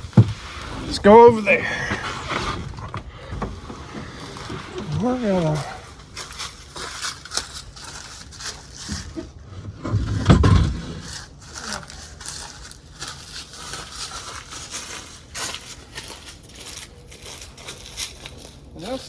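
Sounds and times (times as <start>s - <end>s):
dry brush crunching underfoot: 3.5s - 9.4s, 11.0s - 19.0s.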